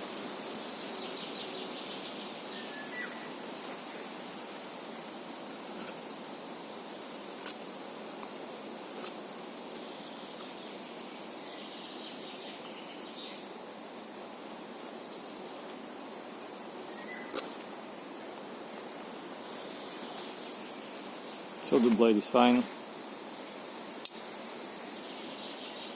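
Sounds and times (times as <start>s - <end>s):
outdoor background noise: 0.0s - 25.9s
small bird chirping: 9.0s - 18.2s.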